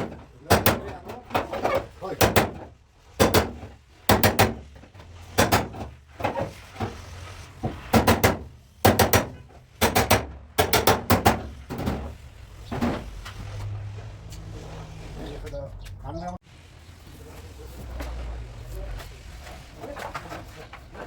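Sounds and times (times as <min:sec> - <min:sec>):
hammer striking sheet metal: 0:05.4 - 0:05.9, 0:07.9 - 0:11.5.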